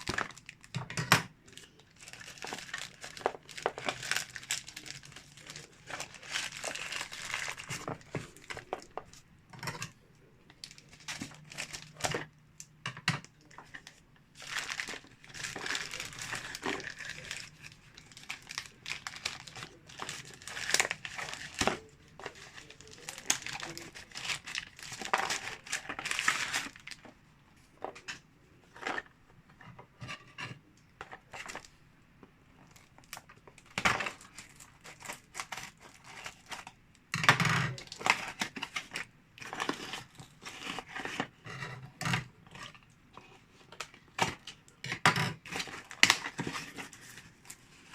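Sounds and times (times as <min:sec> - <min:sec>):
packaging crinkling: 0:00.0 - 0:12.3, 0:13.2 - 0:27.1, 0:32.6 - 0:36.8, 0:37.7 - 0:41.3, 0:45.4 - 0:47.9.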